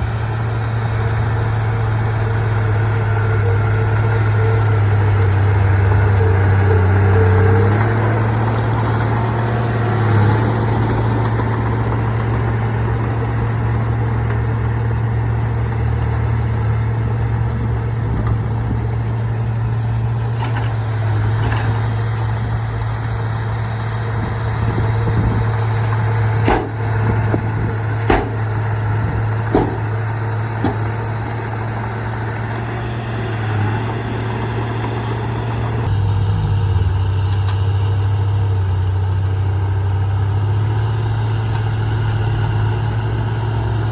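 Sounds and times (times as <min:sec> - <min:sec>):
bulldozer diesel engine running: 0:00.0 - 0:43.9
sharp knocks: 0:26.4 - 0:28.7, 0:29.4 - 0:31.0.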